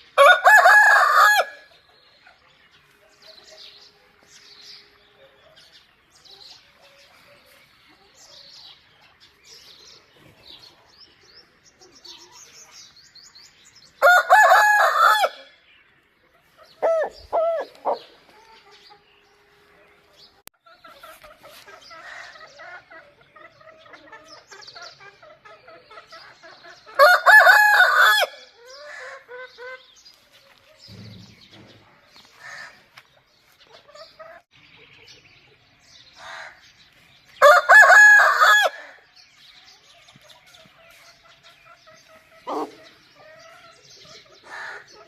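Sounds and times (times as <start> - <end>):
chickens clucking: 0.0 - 4.4, 5.0 - 13.0, 16.0 - 45.0
rooster crowing: 0.2 - 1.6, 14.0 - 15.5, 27.0 - 28.4, 37.4 - 39.0.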